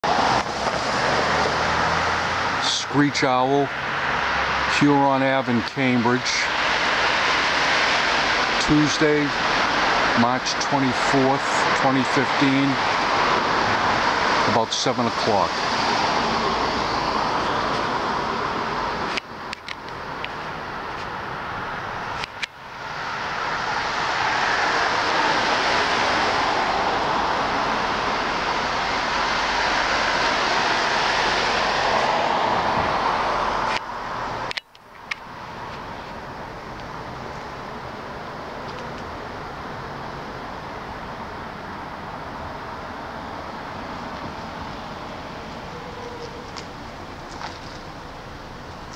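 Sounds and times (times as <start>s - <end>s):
road traffic: 0.0s - 48.9s.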